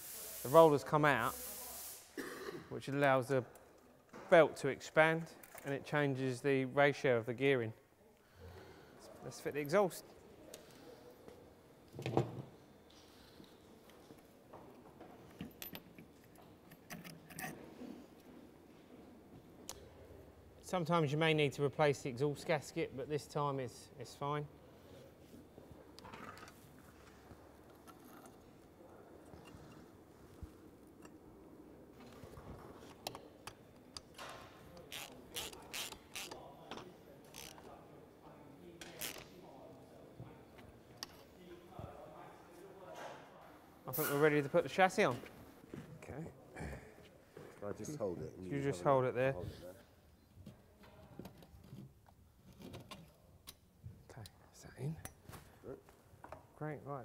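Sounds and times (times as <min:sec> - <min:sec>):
metallic clinks and knocks: 0:15.3 - 0:17.6
socket ratchet clicking: 0:34.9 - 0:36.4.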